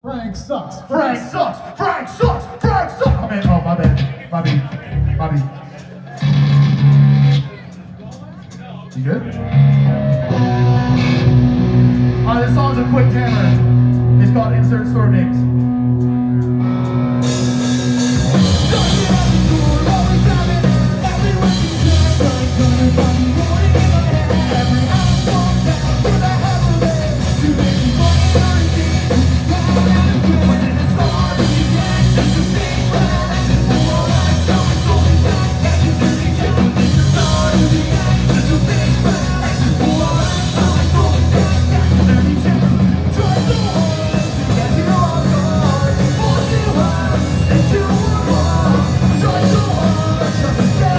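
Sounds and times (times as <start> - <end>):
pop-punk band playing live: 0.0 - 50.9
person singing: 16.5 - 50.9.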